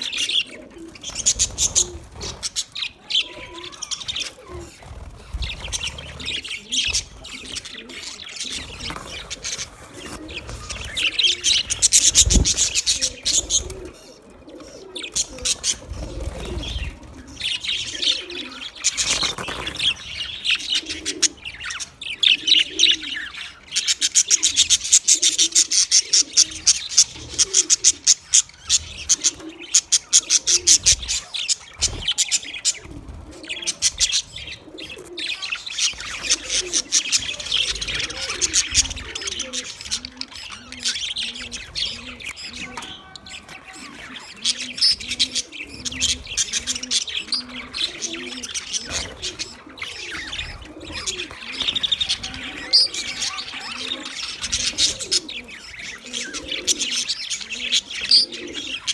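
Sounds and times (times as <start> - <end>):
budgerigars chirping and chattering: 0.0 - 58.9
low cooing call: 3.0 - 19.0, 28.8 - 58.9.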